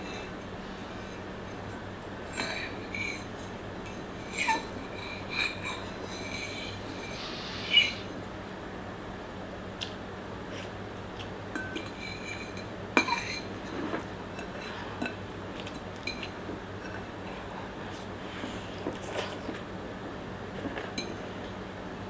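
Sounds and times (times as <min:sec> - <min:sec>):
utensils clinking on a plate: 0:01.5 - 0:07.2, 0:11.5 - 0:17.0, 0:20.6 - 0:21.2.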